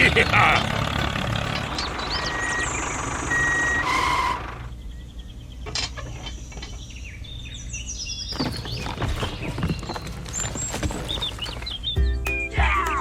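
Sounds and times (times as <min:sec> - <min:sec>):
birds chirping: 0:00.0 - 0:13.0
electronic beeps: 0:01.8 - 0:04.4.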